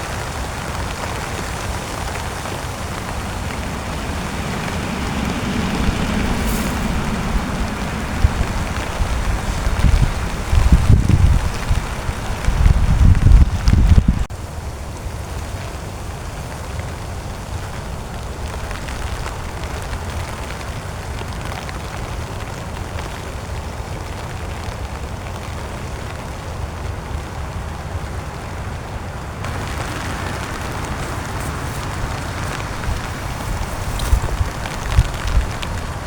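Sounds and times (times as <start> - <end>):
heavy rain on a tent: 0.0 - 36.0
low rumble: 1.6 - 14.3.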